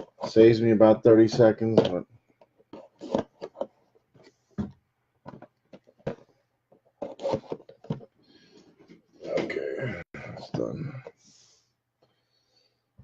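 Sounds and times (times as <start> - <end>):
handling clicks and scrapes: 1.3 - 4.6, 5.2 - 9.5.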